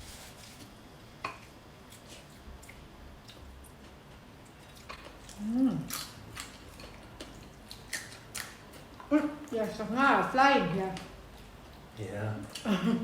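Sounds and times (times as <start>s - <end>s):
chewing sounds: 1.9s - 9.6s
person humming: 5.4s - 5.9s.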